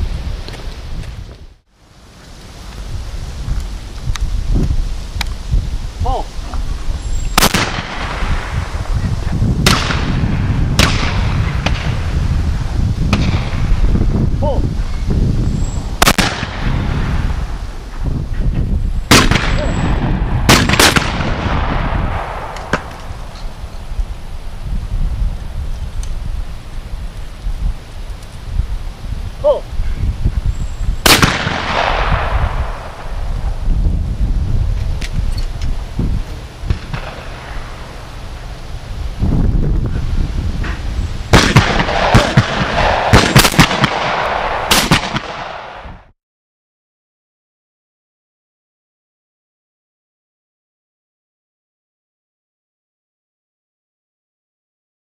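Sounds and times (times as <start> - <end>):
shotgun shots with echo: 7.4 - 8.2, 9.6 - 10.2, 10.8 - 11.9, 16.0 - 16.9, 19.1 - 23.0, 31.0 - 33.1, 41.3 - 45.8.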